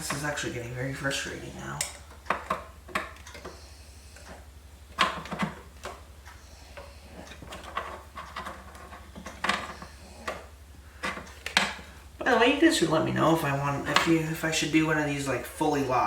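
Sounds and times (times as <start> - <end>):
steady low hum: 0.0 - 16.0
computer parts clicking and knocking: 4.2 - 6.0, 7.2 - 10.4.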